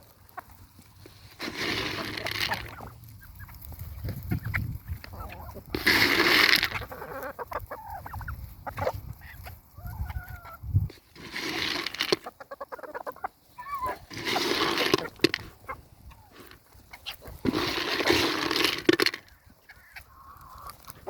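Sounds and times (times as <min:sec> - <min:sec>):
chickens clucking: 0:00.0 - 0:21.0
chicken harsh squawks: 0:12.2 - 0:16.3.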